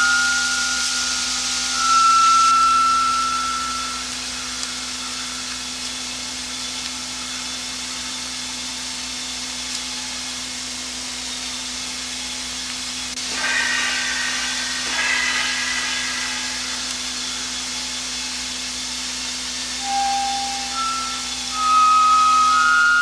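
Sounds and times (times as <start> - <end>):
higher multi-pitched tone: 0.0 - 6.4, 13.2 - 17.7, 19.8 - 23.0
low even hum: 0.0 - 11.0, 13.1 - 23.0
steady hiss: 0.0 - 23.0.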